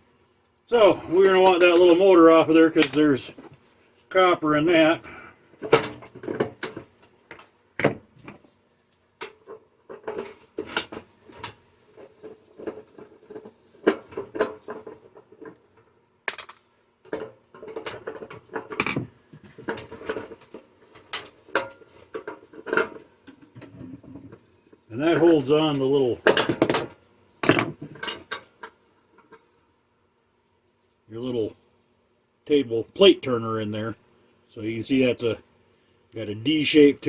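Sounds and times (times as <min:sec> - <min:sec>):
metal parts clinking and clanking: 0:26.3 - 0:28.6.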